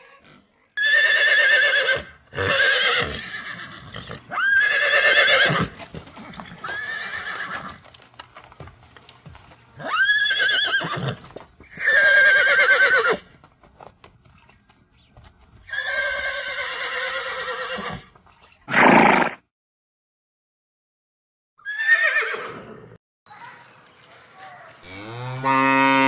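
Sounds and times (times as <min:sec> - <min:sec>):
horse whinnying: 0:00.8 - 0:07.8, 0:09.8 - 0:13.3, 0:15.7 - 0:18.1, 0:18.7 - 0:19.4, 0:21.6 - 0:23.0.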